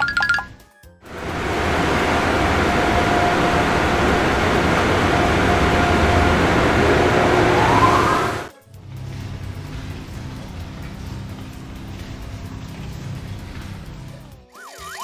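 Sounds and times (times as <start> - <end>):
cartoon vehicle rumble: 1.1 - 8.5
rising whine: 1.1 - 8.5.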